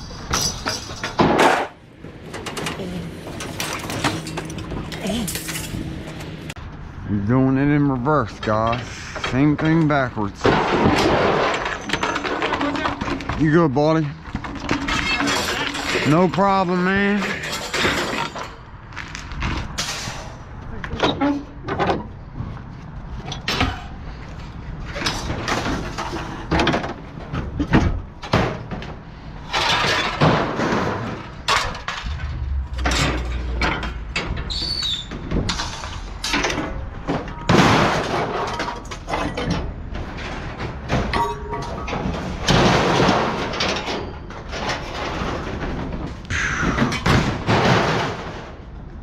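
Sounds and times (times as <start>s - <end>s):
scrap metal clanking: 0.0s - 6.6s, 28.2s - 46.2s
metal scraping: 29.4s - 39.1s.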